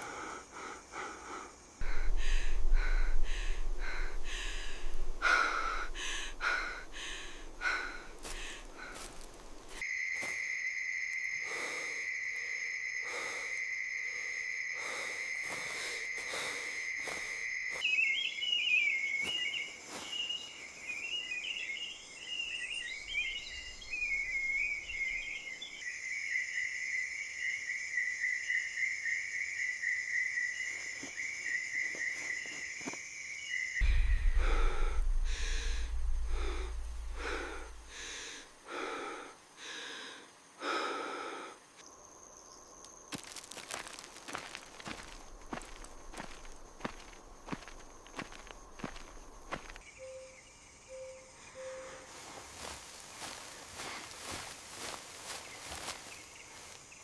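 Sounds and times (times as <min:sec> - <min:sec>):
insects chirring: 0:00.0 - 0:57.0
low rumble: 0:01.8 - 0:08.8, 0:33.8 - 0:38.6
sharp irregular strikes: 0:33.8 - 0:38.1.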